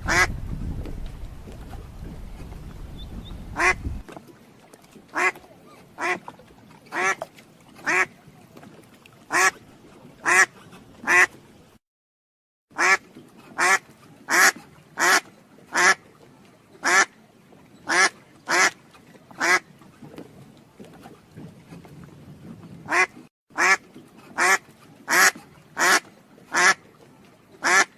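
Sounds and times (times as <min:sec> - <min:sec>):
duck quacking: 0:00.1 - 0:00.3, 0:03.6 - 0:03.8, 0:09.3 - 0:09.5, 0:10.2 - 0:11.3, 0:12.8 - 0:13.0, 0:13.6 - 0:16.0, 0:22.9 - 0:23.8, 0:24.4 - 0:26.8, 0:27.6 - 0:27.9.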